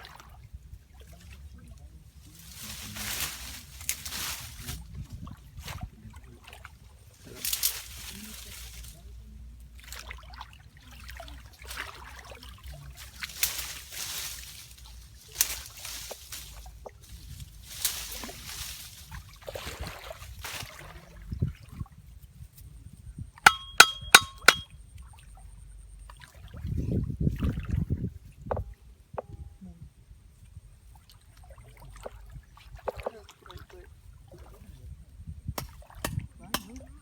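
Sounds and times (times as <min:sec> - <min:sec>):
water splashing and sloshing: 0:00.0 - 0:22.1, 0:26.0 - 0:29.4, 0:30.4 - 0:34.8
sharp ringing clinks: 0:23.5 - 0:24.7.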